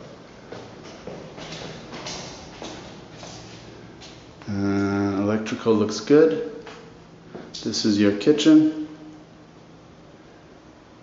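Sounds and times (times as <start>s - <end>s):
man's drawn-out voice: 4.5s - 6.5s.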